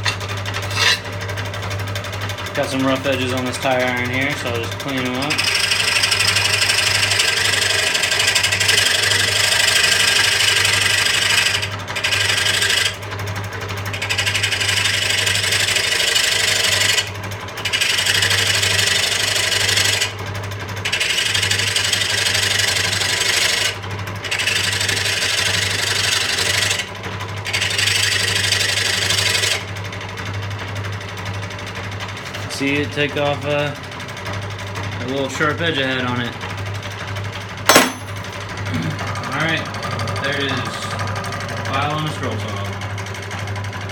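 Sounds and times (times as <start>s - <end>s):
file rasping against steel: 0.0s - 1.4s, 3.1s - 13.0s, 13.9s - 20.2s, 20.8s - 29.6s
scroll saw humming: 0.0s - 13.2s, 13.8s - 20.2s, 20.8s - 29.7s, 35.0s - 43.9s.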